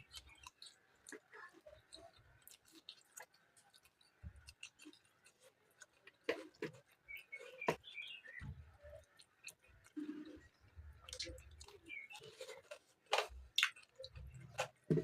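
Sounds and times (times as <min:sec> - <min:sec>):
chewing food: 0:00.0 - 0:15.0
wet mouth clicks and smacks: 0:13.5 - 0:14.2.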